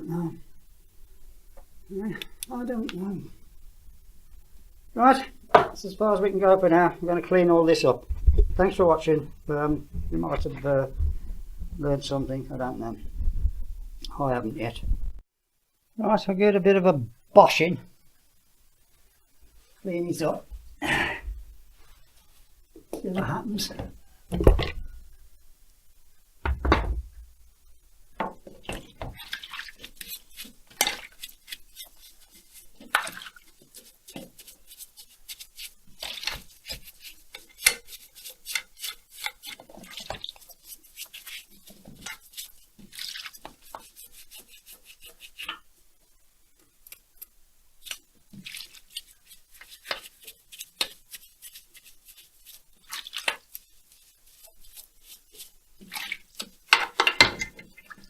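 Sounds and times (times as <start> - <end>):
heavy thumps: 8.1 - 11.9, 20.5 - 21.7, 23.8 - 25.2, 26.4 - 27.4.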